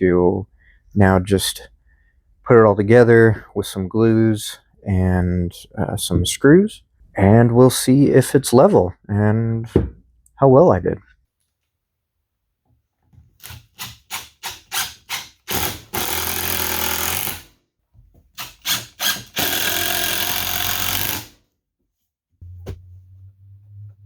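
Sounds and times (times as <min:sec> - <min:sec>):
power driver driving screws into wood: 0:13.4 - 0:17.6, 0:18.4 - 0:21.4.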